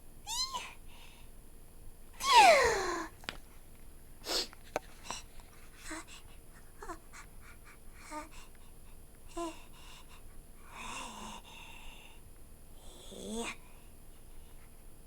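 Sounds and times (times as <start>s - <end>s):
person making squeaky cartoon sounds: 2.2s - 3.0s.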